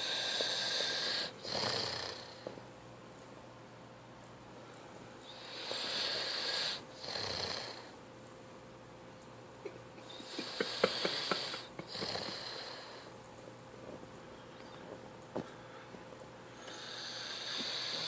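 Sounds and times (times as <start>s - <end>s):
boy snoring: 0.0s - 2.4s, 5.4s - 7.9s, 10.1s - 13.1s, 16.7s - 18.0s.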